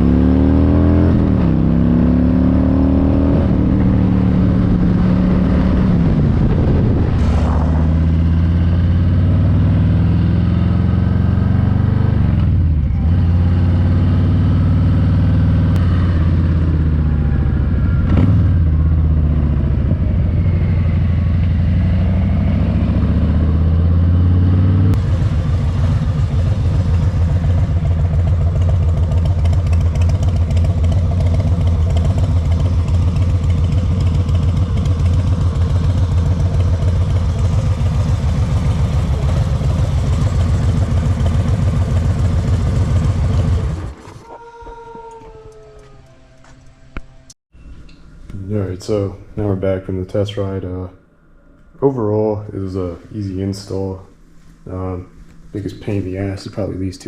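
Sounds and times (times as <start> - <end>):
motorcycle engine revving and idling: 0.0 - 44.3.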